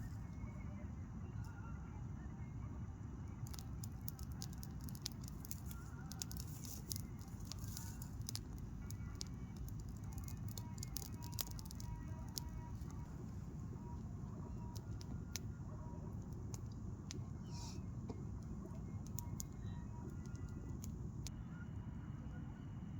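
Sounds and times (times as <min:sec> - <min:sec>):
fire crackling and popping: 0:03.4 - 0:21.3.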